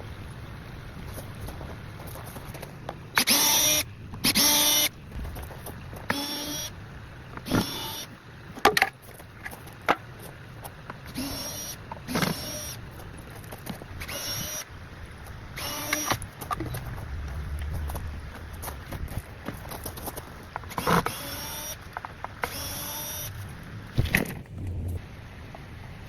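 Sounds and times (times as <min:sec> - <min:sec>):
cordless drill whirring: 0:03.2 - 0:04.9, 0:06.1 - 0:06.7, 0:07.5 - 0:08.1, 0:11.1 - 0:12.8, 0:14.0 - 0:14.7, 0:15.6 - 0:16.2, 0:20.7 - 0:23.4.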